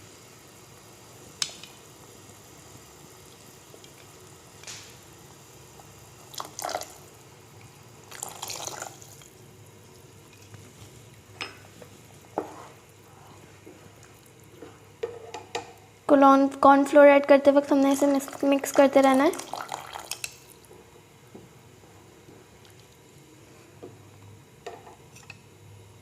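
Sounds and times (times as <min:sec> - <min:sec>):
liquid pouring and stirring: 0:06.3 - 0:07.0, 0:08.1 - 0:10.8, 0:19.3 - 0:20.7
knocks and scrapes in pot: 0:12.3 - 0:12.8.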